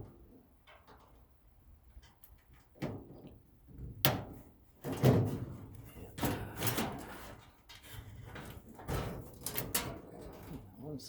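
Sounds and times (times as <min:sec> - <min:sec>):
metal clanks and knocks: 0:04.0 - 0:10.8
light metal rattling: 0:04.8 - 0:10.9.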